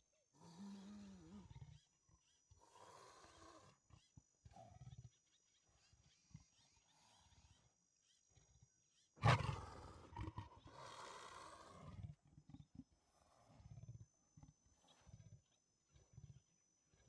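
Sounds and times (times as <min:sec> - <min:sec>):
leopard grunting: 0:09.2 - 0:13.9
leopard roaring: 0:09.2 - 0:13.9.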